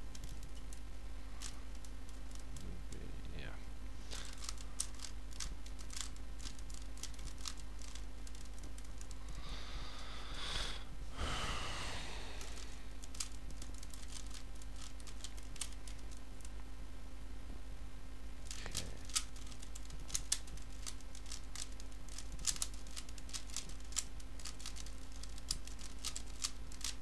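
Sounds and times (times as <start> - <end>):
puzzle cube plastic clicks: 0.1 - 3.0, 4.1 - 9.2, 12.3 - 16.6, 18.4 - 27.0.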